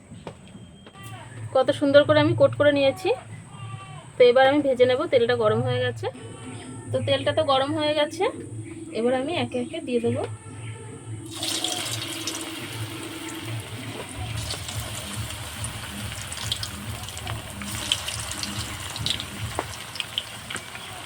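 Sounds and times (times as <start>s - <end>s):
food sizzling in hot oil: 11.3s - 21.0s
oil popping and crackling: 11.3s - 21.0s.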